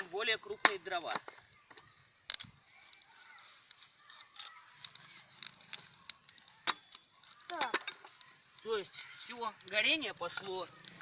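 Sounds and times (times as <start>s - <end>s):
wood fire crackling and popping: 0.0s - 11.0s
firewood knocks: 6.6s - 8.1s.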